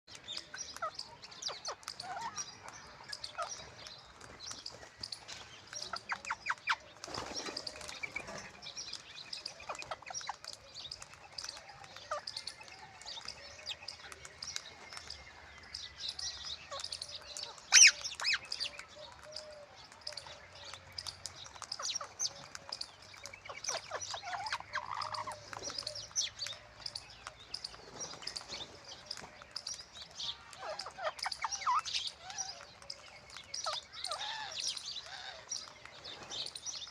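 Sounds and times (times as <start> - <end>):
parrot chirping and squawking: 17.7 - 18.5, 23.5 - 25.4, 30.6 - 32.6.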